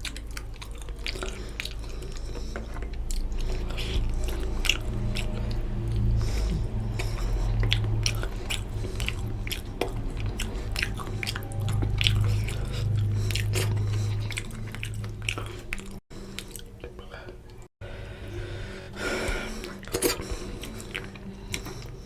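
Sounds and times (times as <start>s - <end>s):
wet chewing: 0.0s - 17.7s, 19.0s - 22.0s
low hum: 0.0s - 22.0s.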